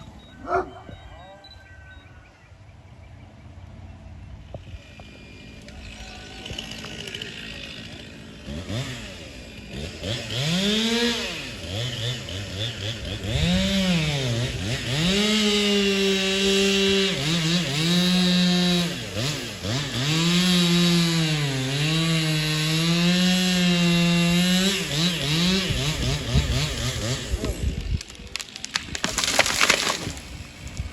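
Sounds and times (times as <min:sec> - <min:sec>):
chainsaw engine revving: 0:04.6 - 0:28.1.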